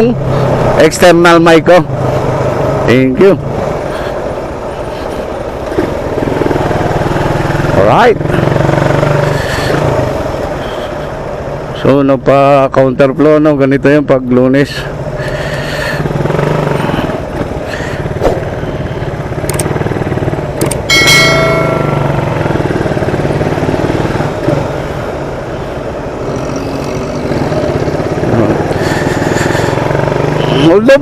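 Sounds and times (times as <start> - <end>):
motorcycle engine running: 5.6 - 11.0, 15.2 - 31.0.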